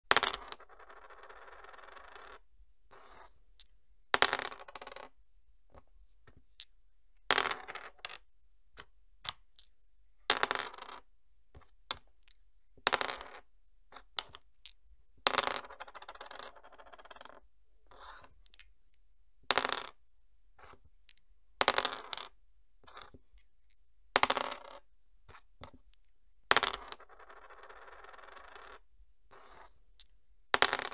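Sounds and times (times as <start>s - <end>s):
dice clattering on hard surface: 0.1s - 2.4s, 3.0s - 6.7s, 7.3s - 8.2s, 9.2s - 9.7s, 10.3s - 17.4s, 18.2s - 18.8s, 19.5s - 20.0s, 20.6s - 28.8s, 29.4s - 30.9s.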